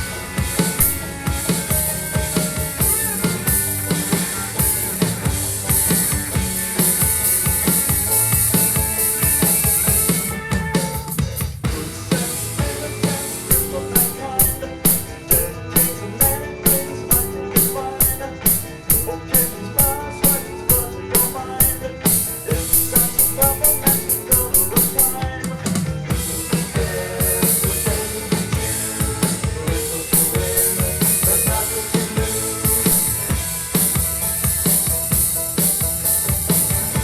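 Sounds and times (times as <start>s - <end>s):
cymbals ringing: 0.0s - 10.3s, 12.1s - 25.2s
drum kit playing: 0.0s - 37.0s
psychedelic pop song recording: 0.0s - 37.0s.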